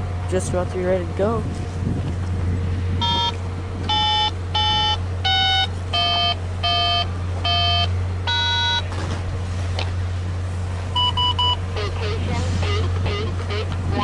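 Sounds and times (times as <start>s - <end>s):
steady low hum: 0.0s - 14.0s
electronic beeping tune: 3.0s - 3.3s, 3.9s - 8.8s, 11.0s - 11.6s.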